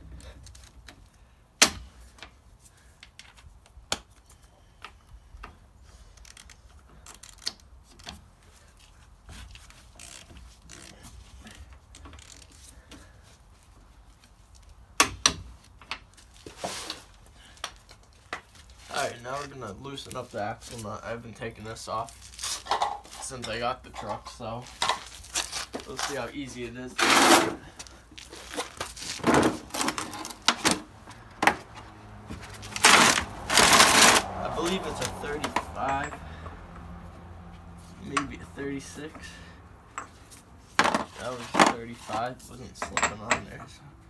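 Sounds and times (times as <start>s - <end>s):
scraping rustle: 16.1s - 36.0s, 40.1s - 42.7s
metal hand tools clinking: 32.6s - 36.4s.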